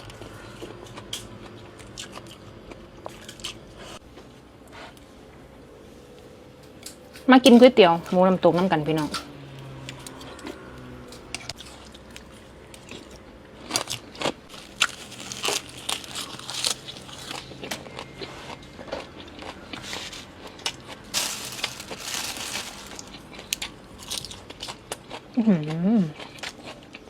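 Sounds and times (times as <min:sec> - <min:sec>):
chewing and crunchy bites: 0:00.0 - 0:04.0, 0:11.4 - 0:27.0.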